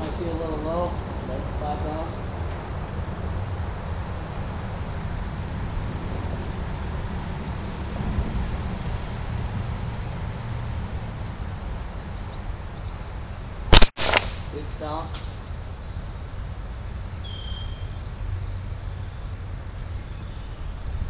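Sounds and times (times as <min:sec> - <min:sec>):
air rifle shot: 0:13.7 - 0:15.3.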